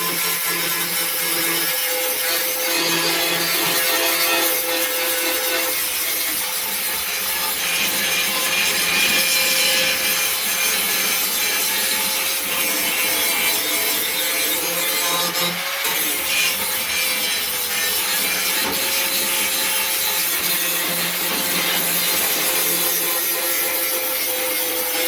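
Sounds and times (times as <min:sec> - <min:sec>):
abrasive scraping of rust on steel: 0:00.0 - 0:25.0.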